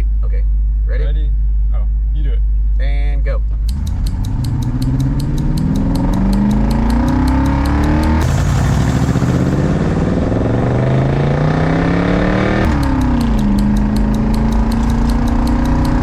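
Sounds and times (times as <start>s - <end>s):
pickup engine accelerating: 3.6s - 16.0s.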